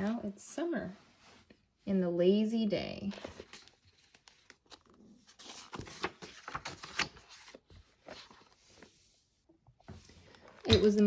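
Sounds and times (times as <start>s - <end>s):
book pages rustling and turning: 3.0s - 11.0s.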